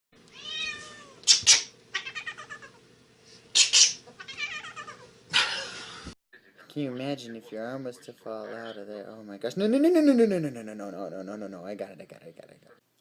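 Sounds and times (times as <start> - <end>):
cat meowing and yowling: 0.4 - 1.2, 2.0 - 2.8, 4.2 - 5.1.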